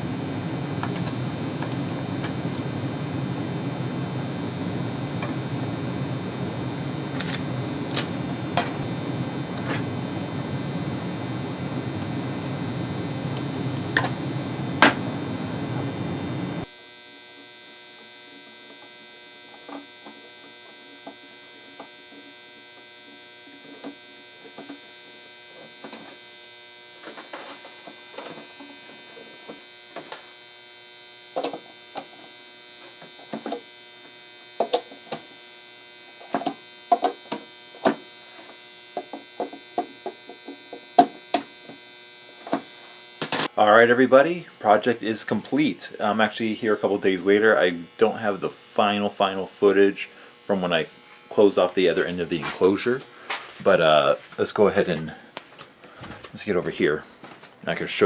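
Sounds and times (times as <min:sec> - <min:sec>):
steady rushing noise: 0:00.0 - 0:16.7
electrical hum: 0:00.0 - 0:58.0.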